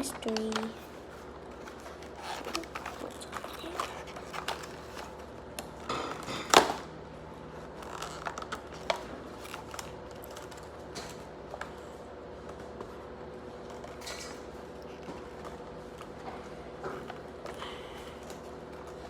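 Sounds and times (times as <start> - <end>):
hands handling toy package: 0.0 - 6.8, 7.7 - 11.8.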